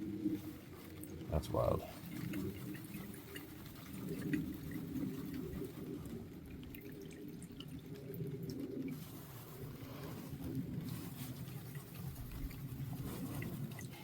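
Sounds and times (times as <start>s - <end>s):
low steady background noise: 0.0s - 14.0s
liquid dripping: 1.0s - 9.8s.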